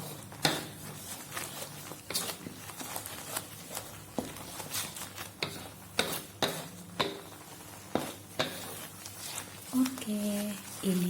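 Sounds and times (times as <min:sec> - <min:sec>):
spatula scraping a frying pan: 0:00.0 - 0:11.0.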